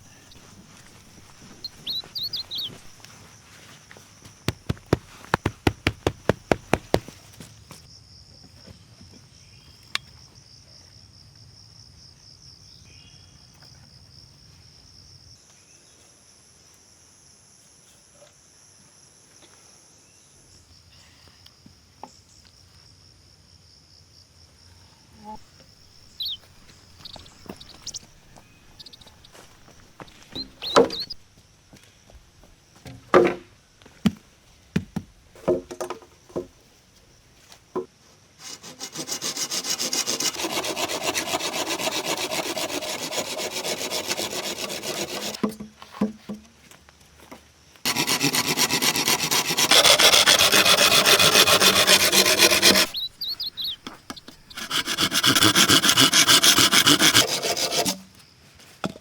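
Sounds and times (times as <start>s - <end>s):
insects chirring: 0.0s - 15.5s, 18.5s - 32.9s, 47.6s - 57.1s
sharp knocks: 4.5s - 7.2s.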